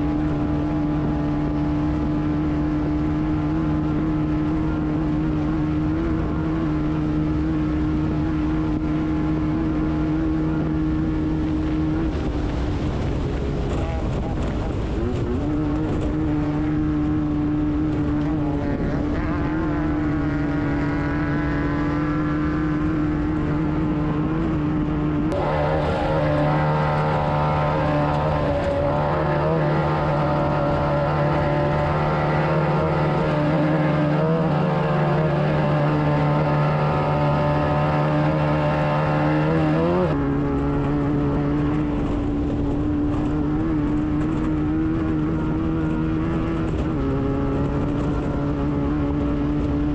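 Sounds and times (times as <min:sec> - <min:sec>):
buggy engine running hard: 0:00.0 - 0:49.9.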